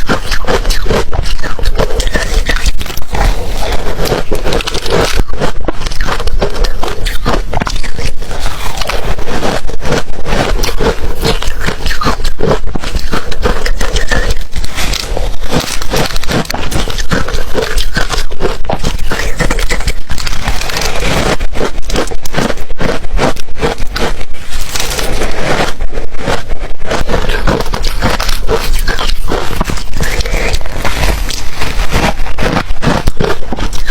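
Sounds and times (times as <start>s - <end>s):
ice being chewed crunching: 0.0s - 33.9s.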